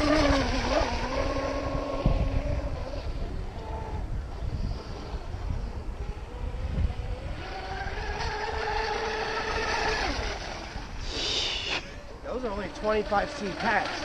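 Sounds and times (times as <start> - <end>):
electric boat motor whining: 0.0 - 14.0
wind rumbling on microphone: 0.0 - 14.0
brief hiss: 11.0 - 12.0.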